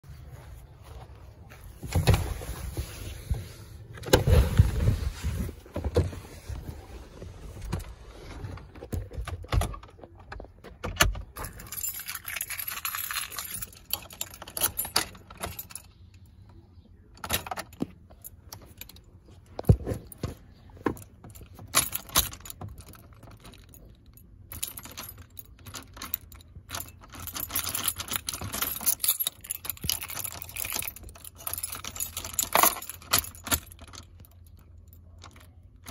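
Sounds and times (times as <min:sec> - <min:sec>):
keys jangling on key ring: 0:11.3 - 0:15.9, 0:21.1 - 0:35.9.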